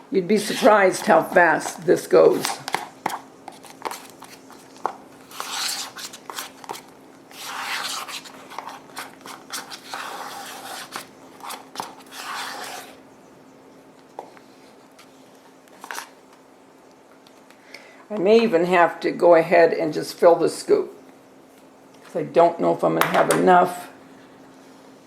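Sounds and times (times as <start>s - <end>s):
tool scraping spackle in container: 5.3s - 13.0s.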